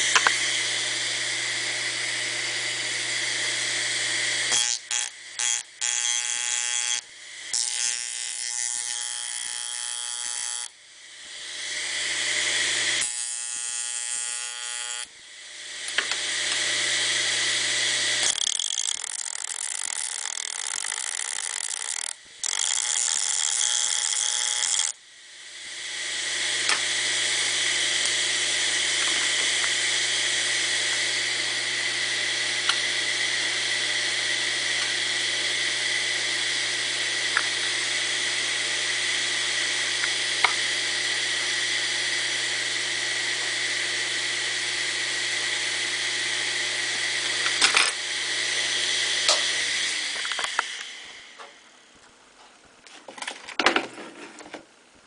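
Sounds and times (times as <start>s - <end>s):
disk drive grinder whine and hiss: 0.0s - 51.7s.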